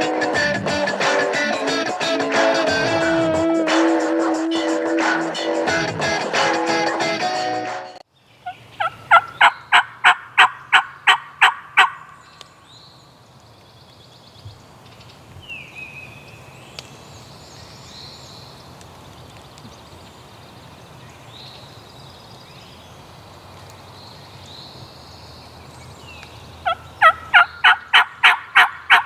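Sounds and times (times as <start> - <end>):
faint songbird chirps: 8.1 - 29.0
wild turkey calling: 8.2 - 12.7, 26.2 - 29.0.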